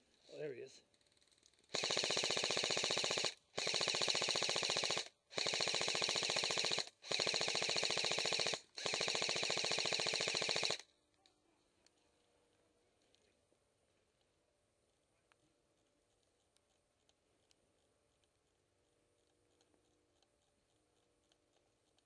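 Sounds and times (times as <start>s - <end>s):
airsoft gun firing full auto: 1.7s - 10.9s.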